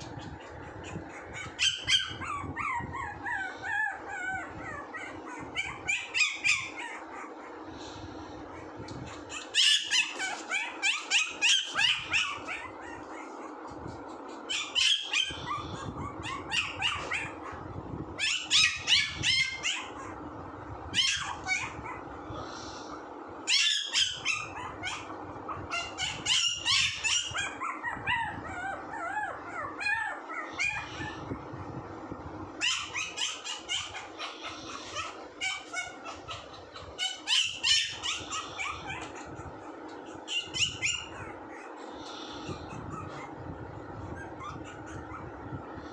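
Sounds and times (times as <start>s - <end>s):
puppy yapping and whining: 0.0s - 7.6s, 8.5s - 22.2s, 23.4s - 45.9s.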